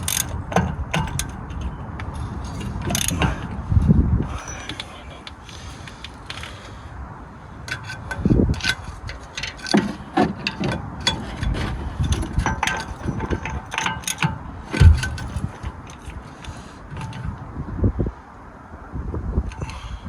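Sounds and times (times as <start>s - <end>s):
socket ratchet clicking: 0.0s - 1.7s
metal tools clanking: 0.0s - 6.8s, 7.5s - 17.6s
heavy knocks: 14.7s - 15.7s.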